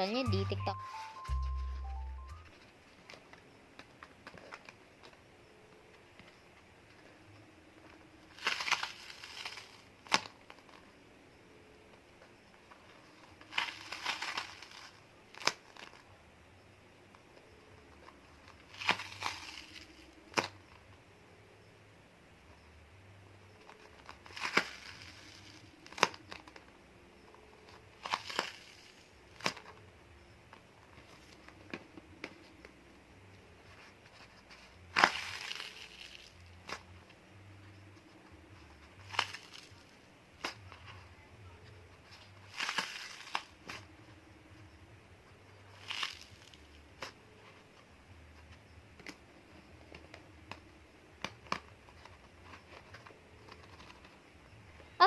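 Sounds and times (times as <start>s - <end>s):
tape crinkling: 7.8s - 10.8s, 12.8s - 16.1s, 18.0s - 20.6s, 23.6s - 26.7s, 27.6s - 29.8s, 33.6s - 41.0s, 41.6s - 43.9s, 45.6s - 47.6s.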